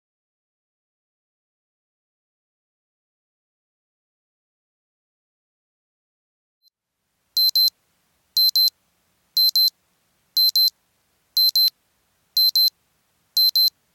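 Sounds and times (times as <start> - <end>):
timer alarm double beeps: 7.4 - 7.7, 8.4 - 8.7, 9.4 - 9.7, 10.4 - 10.7, 11.4 - 11.7, 12.4 - 12.7, 13.4 - 13.7.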